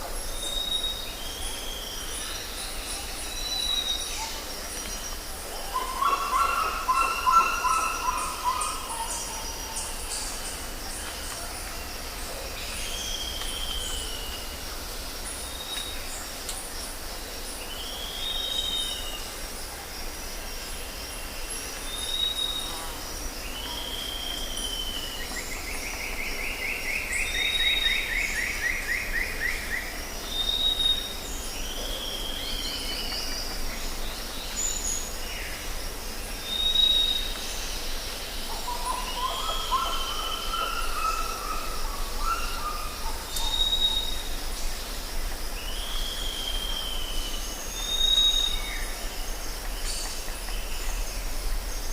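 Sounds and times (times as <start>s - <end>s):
high insect drone: 0.0s - 51.9s
arched whistled bird call: 42.2s - 44.3s.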